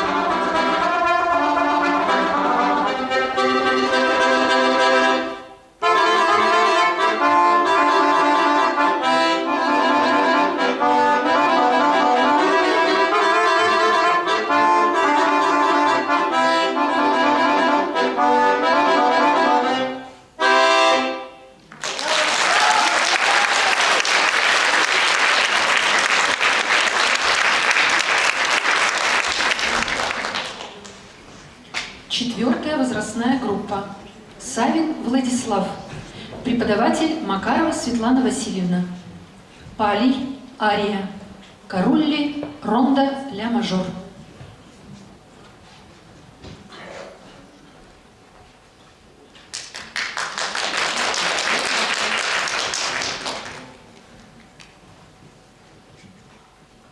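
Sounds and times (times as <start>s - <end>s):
accordion playing: 0.0s - 21.6s
audience applause: 21.7s - 31.1s, 49.5s - 54.0s.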